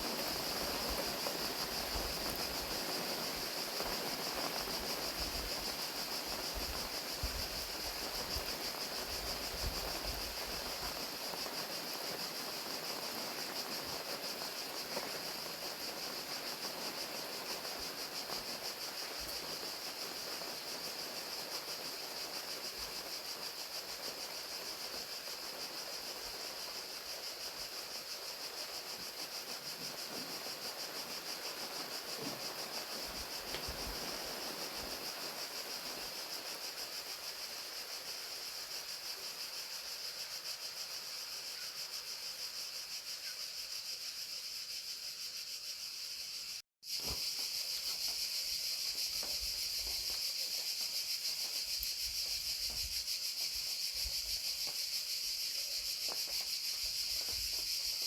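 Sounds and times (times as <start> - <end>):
rain falling: 0.0 - 39.8
crickets chirping: 0.0 - 58.0.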